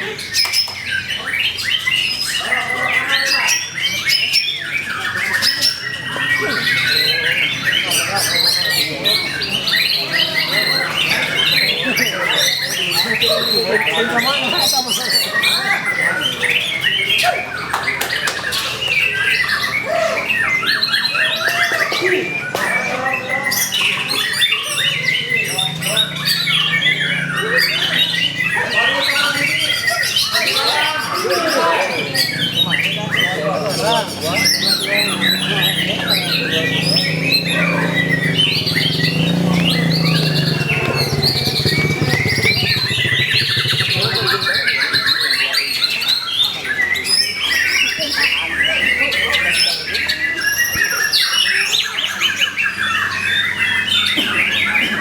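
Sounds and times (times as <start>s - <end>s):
bird singing chirps and whistles: 0.0s - 54.2s.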